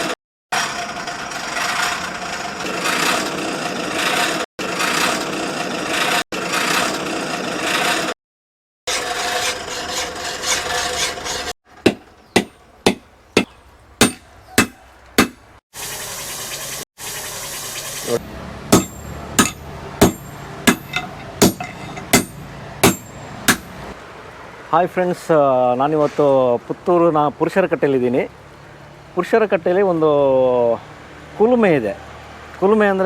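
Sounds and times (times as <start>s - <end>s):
metal rasping: 8.9s - 15.4s, 18.7s - 23.8s
hammer striking metal: 11.8s - 15.4s, 18.7s - 23.8s.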